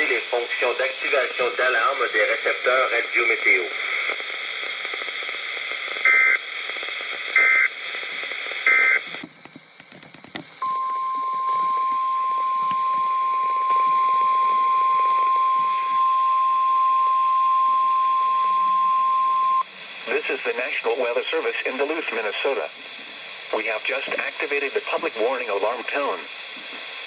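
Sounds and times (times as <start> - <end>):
faint static: 0.0 - 18.8
steady warning alarm tone: 8.7 - 19.6
clicks: 9.1 - 16.0.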